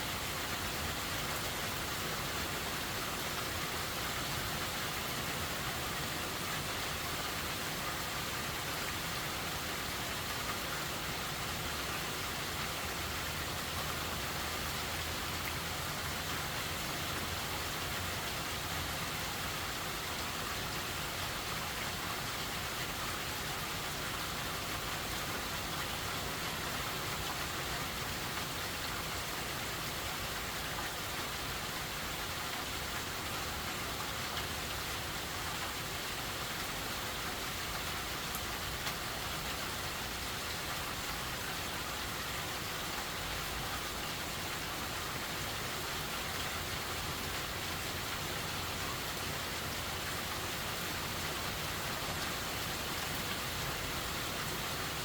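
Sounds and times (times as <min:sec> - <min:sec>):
heavy rain hissing: 0:00.0 - 0:55.0.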